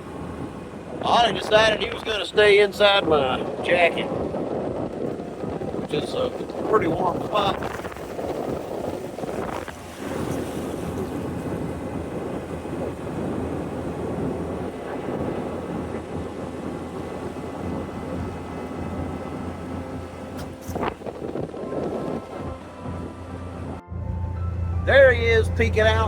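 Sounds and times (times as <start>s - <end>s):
wind buffeting microphone: 0.0s - 26.0s
utility vehicle engine running: 8.8s - 26.0s.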